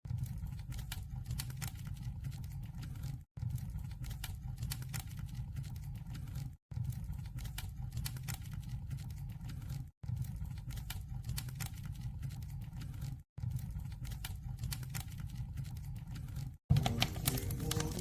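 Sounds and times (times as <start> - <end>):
wood fire crackling in stove: 12.9 - 18.0.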